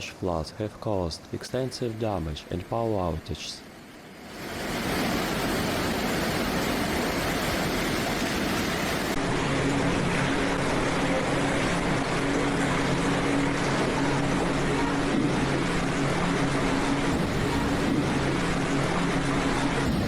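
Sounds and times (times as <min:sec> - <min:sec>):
low motor hum: 0:03.6 - 0:20.0
floodwater rushing: 0:04.2 - 0:09.2, 0:16.8 - 0:20.0.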